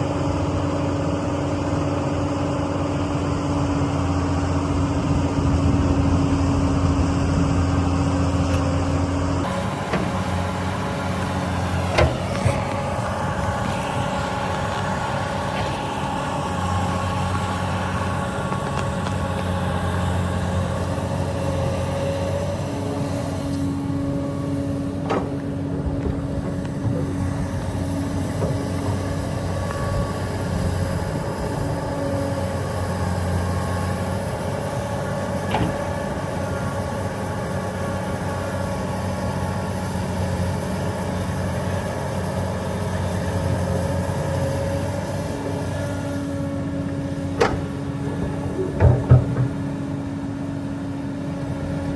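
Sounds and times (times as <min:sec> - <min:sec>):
diesel engines humming: 0:00.0 - 0:51.9
hydraulic whine: 0:03.2 - 0:51.9
sharp knocks: 0:48.6 - 0:49.8.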